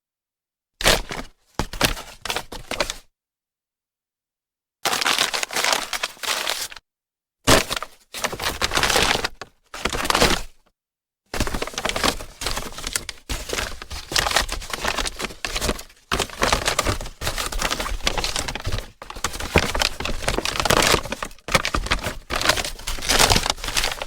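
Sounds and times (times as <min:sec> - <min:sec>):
paper bag crumpling: 0:04.9 - 0:06.8, 0:11.6 - 0:24.0.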